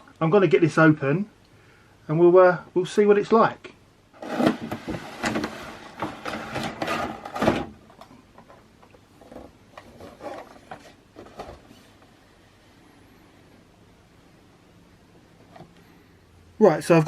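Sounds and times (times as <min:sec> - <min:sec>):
cardboard scraping and tearing: 0:04.2 - 0:07.8, 0:09.8 - 0:11.9.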